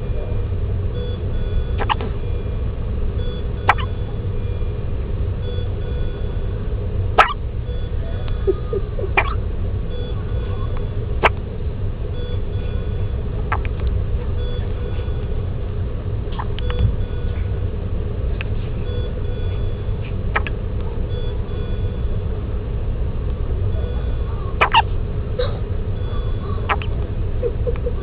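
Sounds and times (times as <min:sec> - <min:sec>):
faint electronic beeps: 0:00.0 - 0:04.8, 0:05.4 - 0:06.6, 0:07.2 - 0:11.3, 0:12.0 - 0:15.4, 0:16.4 - 0:17.6, 0:18.7 - 0:22.3, 0:23.6 - 0:24.9, 0:25.9 - 0:27.0
steady low rumble: 0:00.0 - 0:28.0.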